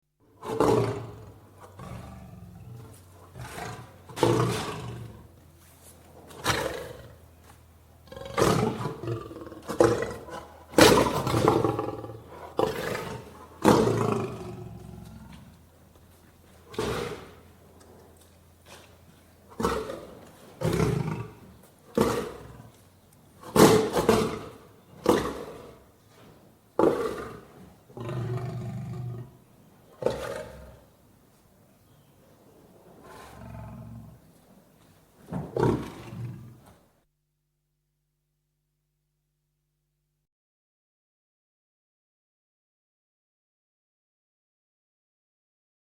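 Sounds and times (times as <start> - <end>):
lion roaring and grunting: 0.3 - 5.4, 6.2 - 7.3, 8.0 - 15.7, 16.6 - 22.8, 23.4 - 25.9, 26.8 - 29.4, 30.0 - 30.9, 32.9 - 34.3, 35.4 - 36.8.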